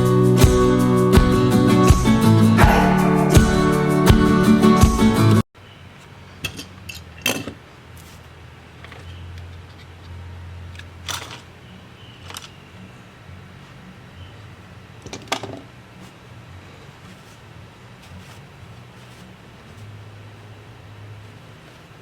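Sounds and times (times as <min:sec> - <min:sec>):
acoustic guitar music: 0:00.0 - 0:05.4.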